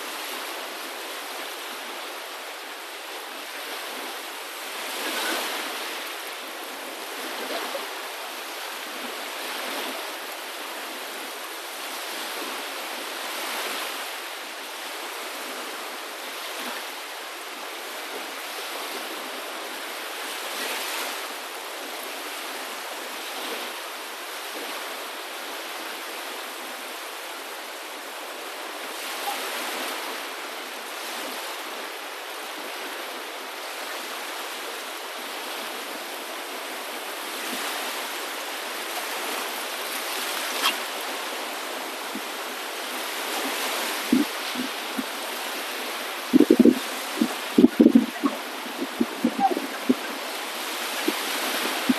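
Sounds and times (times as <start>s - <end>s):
waves washing in: 0.0s - 51.9s.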